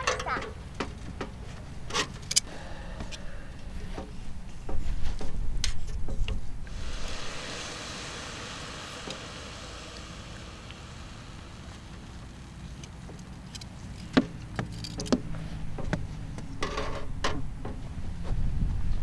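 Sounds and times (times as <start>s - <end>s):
low rumble: 6.5s - 13.6s.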